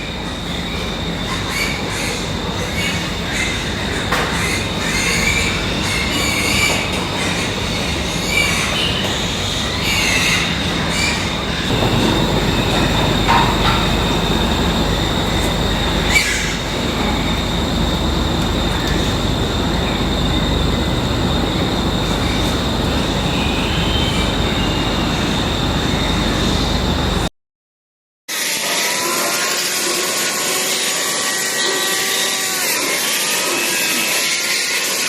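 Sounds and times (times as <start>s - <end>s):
pigs squealing: 0.0s - 17.4s, 28.3s - 35.0s
thin high whine: 11.4s - 27.3s
steady rushing noise: 11.7s - 27.3s.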